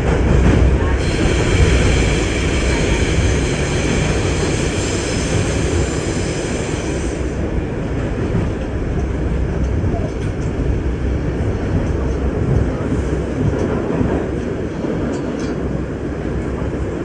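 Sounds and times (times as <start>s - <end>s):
subway train rumbling: 0.0s - 17.0s.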